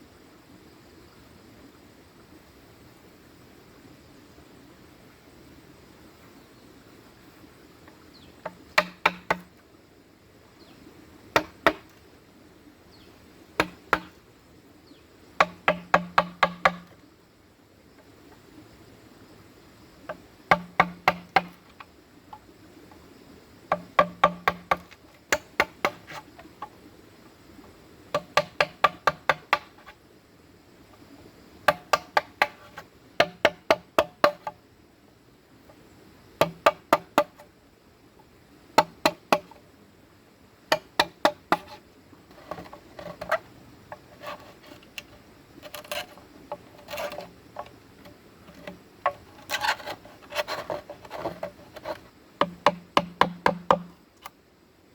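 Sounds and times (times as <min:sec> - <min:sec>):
hollow bamboo being struck: 0:08.4 - 0:09.5, 0:11.4 - 0:11.9, 0:13.6 - 0:14.2, 0:15.4 - 0:17.0, 0:20.1 - 0:21.8, 0:23.7 - 0:26.7, 0:28.1 - 0:29.9, 0:31.7 - 0:34.6, 0:36.4 - 0:37.4, 0:40.7 - 0:47.7, 0:48.5 - 0:53.9.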